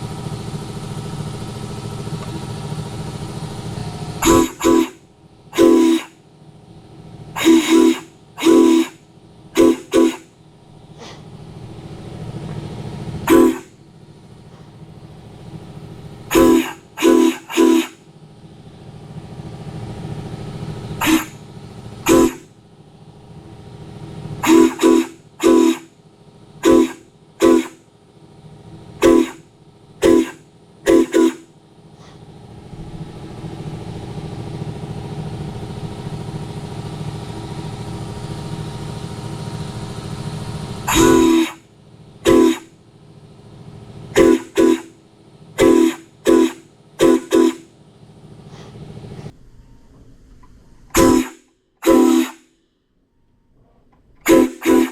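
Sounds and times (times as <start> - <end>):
low steady hum: 0.0 - 38.8, 39.7 - 52.2, 52.8 - 54.8
steam whistle toots: 4.2 - 6.2, 7.3 - 10.4, 13.2 - 13.8, 16.3 - 18.1, 21.0 - 21.4, 22.0 - 22.5, 24.4 - 26.0, 26.6 - 27.9, 29.0 - 32.1, 40.8 - 42.8, 44.1 - 45.0, 45.6 - 47.7, 50.9 - 52.5, 54.2 - 54.9.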